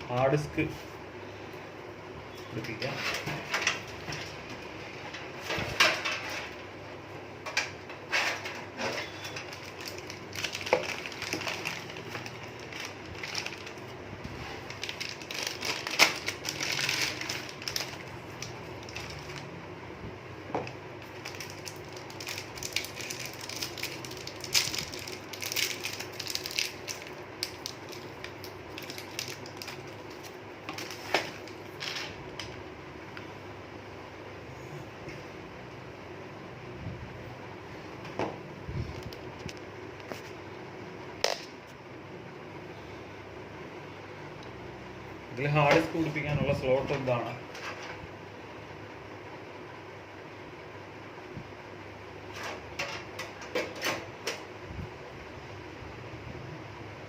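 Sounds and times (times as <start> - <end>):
computer parts handling noises: 2.5 - 4.4, 7.5 - 13.9, 14.5 - 19.5, 20.6 - 32.6.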